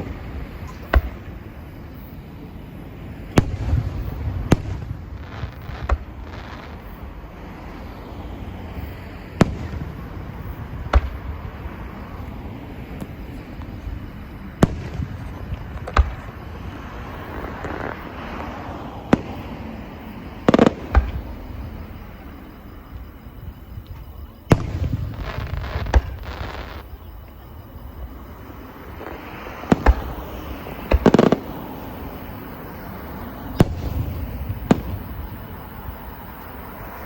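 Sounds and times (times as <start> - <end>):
fireworks bangs: 0.0 - 2.2, 3.2 - 7.1, 8.7 - 37.0
low rumble of fireworks: 0.0 - 37.0.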